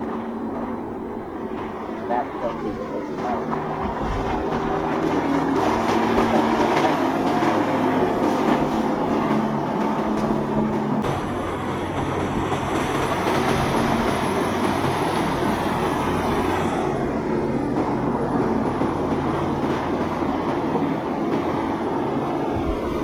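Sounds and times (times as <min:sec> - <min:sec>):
boat engines droning: 0:00.0 - 0:23.0
rushing water: 0:00.0 - 0:23.0
wind noise: 0:00.0 - 0:23.0.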